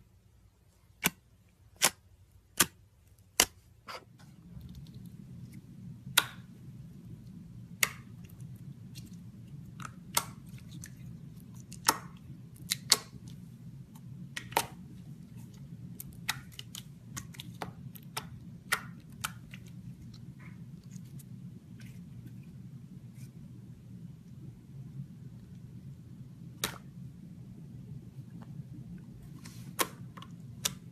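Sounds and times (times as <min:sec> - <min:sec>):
steady low hum: 0:00.0 - 0:30.9
slime clicking and popping: 0:09.7 - 0:10.9, 0:11.5 - 0:13.4.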